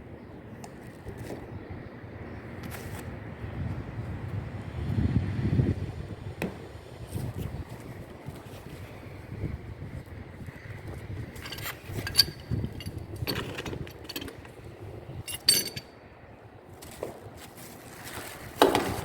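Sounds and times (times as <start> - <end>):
pipe fittings clinking: 11.3 - 14.6, 15.2 - 15.9.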